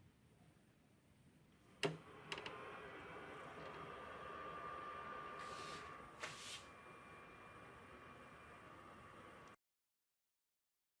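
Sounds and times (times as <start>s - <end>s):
thin steady whine: 1.6s - 9.6s.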